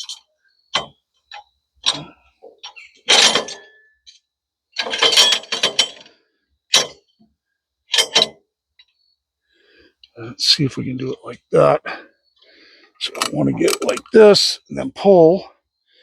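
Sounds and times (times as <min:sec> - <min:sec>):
metal clanks: 0:00.0 - 0:06.1, 0:06.7 - 0:07.1, 0:07.9 - 0:08.4, 0:13.1 - 0:14.1.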